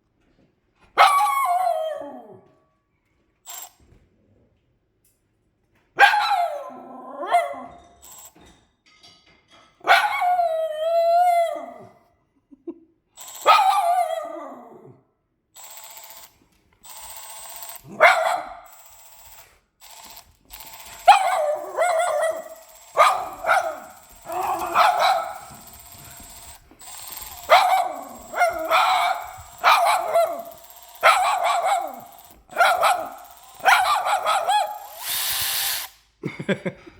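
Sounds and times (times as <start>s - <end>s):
dog barking: 1.0s - 1.7s, 6.0s - 7.9s, 9.8s - 10.4s, 13.4s - 14.6s, 17.9s - 18.7s, 21.0s - 26.3s, 27.3s - 35.0s
dog howling: 6.2s - 7.7s, 10.0s - 12.0s, 13.6s - 15.0s, 21.1s - 26.3s.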